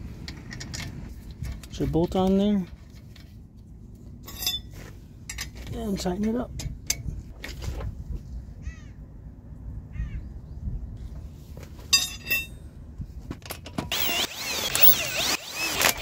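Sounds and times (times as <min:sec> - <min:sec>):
impact wrench whining: 0:13.8 - 0:16.0.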